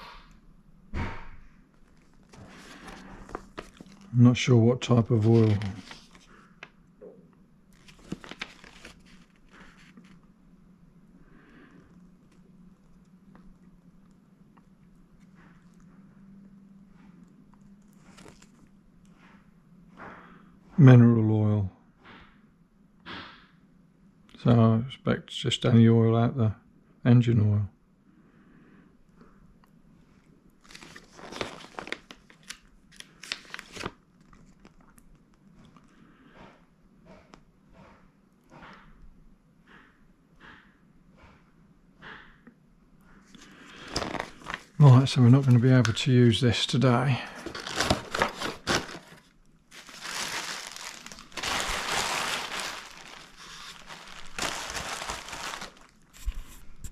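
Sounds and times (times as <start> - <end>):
plastic wrapping crinkling: 1.9 - 4.2, 4.8 - 6.8, 7.7 - 10.3, 17.8 - 18.7, 30.6 - 34.8, 43.7 - 46.0, 47.2 - 56.4.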